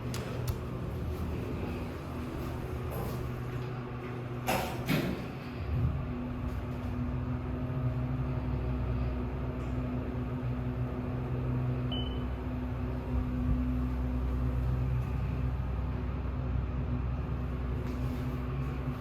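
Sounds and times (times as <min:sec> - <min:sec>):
elevator mechanical hum: 0:00.0 - 0:19.0.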